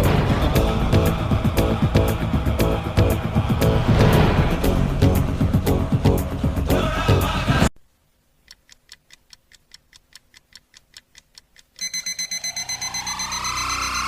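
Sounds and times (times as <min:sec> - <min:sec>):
loud music: 0:00.0 - 0:07.7
fast clock-like ticking: 0:08.4 - 0:14.0
pulsing electronic alarm tone: 0:11.8 - 0:14.0.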